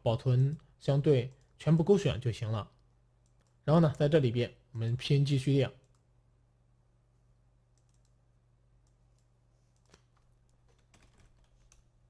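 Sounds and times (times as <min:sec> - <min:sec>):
mouse and keyboard clicks: 0:08.8 - 0:11.8.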